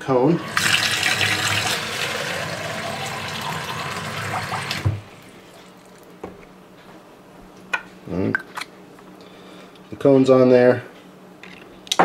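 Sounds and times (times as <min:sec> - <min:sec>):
tap water running into plastic bottle: 0:00.4 - 0:05.2
tap shutting off knock: 0:04.0 - 0:05.1.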